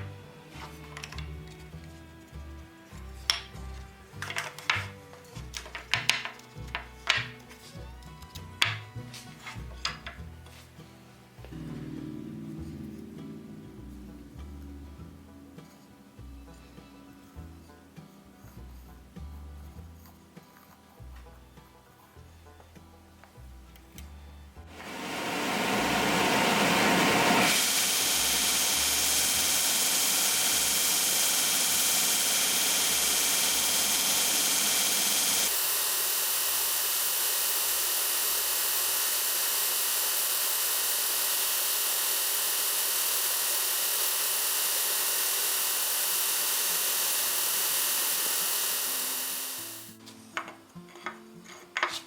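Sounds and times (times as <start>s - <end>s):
loud machine-like hissing: 24.7s - 50.0s.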